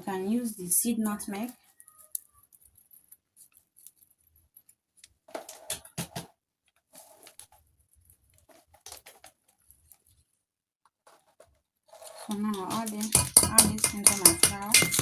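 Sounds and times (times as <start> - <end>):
teaspoon scraping and clicking: 12.0 - 15.0.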